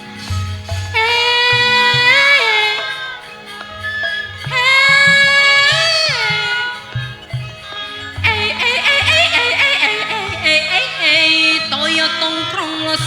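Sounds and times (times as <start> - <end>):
gamelan accompaniment: 0.0 - 13.0
kendang drum strokes: 0.3 - 10.6
woman singing high held notes: 0.9 - 3.4, 4.2 - 7.3, 7.9 - 13.0.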